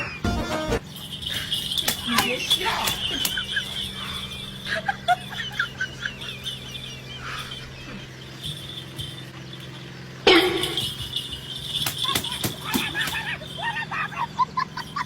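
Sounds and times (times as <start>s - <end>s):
birds chirping: 0.0s - 15.0s
chickens clucking: 11.8s - 15.0s.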